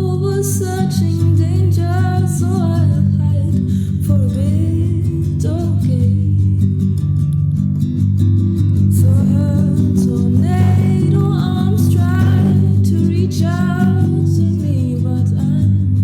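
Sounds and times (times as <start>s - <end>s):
guitar: 0.0s - 16.0s
person singing: 9.0s - 15.9s.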